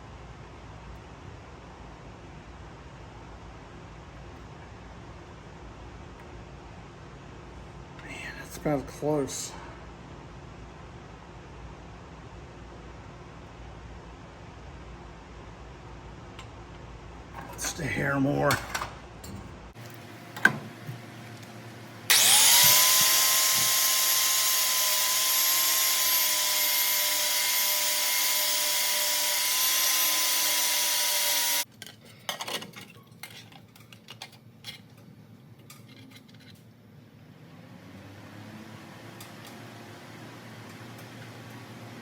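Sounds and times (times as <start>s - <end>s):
rotary grinder whine: 19.8s - 31.7s
light scrapes and clicks: 35.6s - 36.7s.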